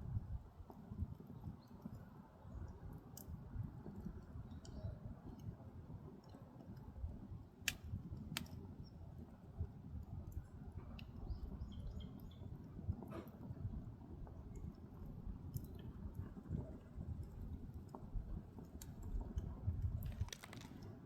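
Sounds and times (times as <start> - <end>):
firewood crackling: 7.4 - 12.4, 14.2 - 21.0
sharp pops of burning wood: 7.6 - 8.8, 17.2 - 21.0.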